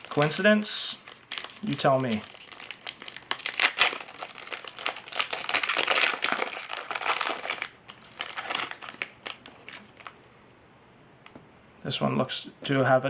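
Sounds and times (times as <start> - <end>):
card pack wrapper crinkling: 0.0 - 10.2.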